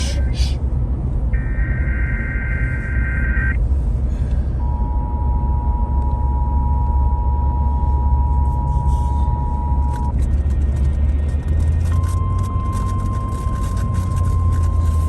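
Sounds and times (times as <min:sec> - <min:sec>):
low rumble: 0:00.0 - 0:15.0.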